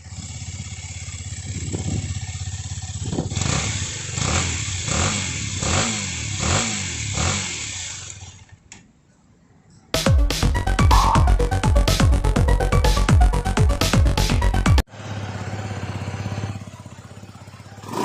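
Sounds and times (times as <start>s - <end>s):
motorcycle idling and revving: 0.0s - 8.6s, 13.2s - 18.0s.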